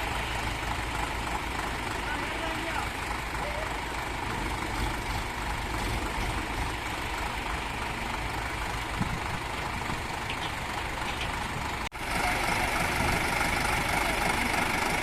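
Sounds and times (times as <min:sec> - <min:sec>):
diesel truck engine running: 0:00.0 - 0:15.0.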